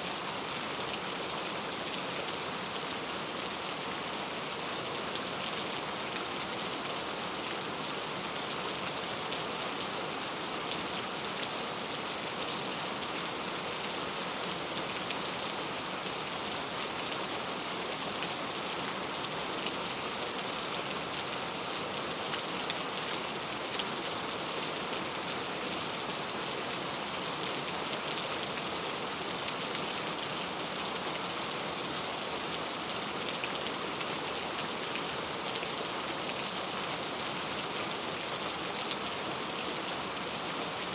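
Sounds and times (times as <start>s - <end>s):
rain falling on pavement: 0.0s - 40.9s.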